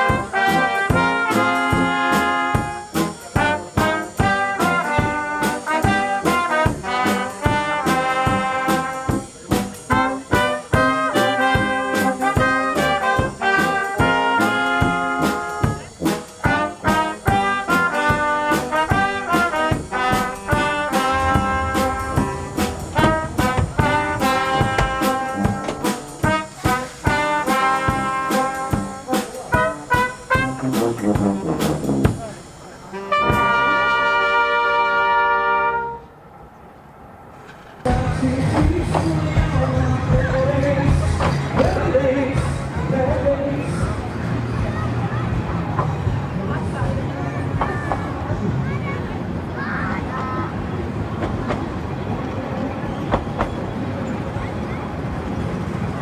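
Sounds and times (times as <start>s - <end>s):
steady drum beat: 0.0s - 33.7s
brass band horns playing melody: 0.0s - 36.2s.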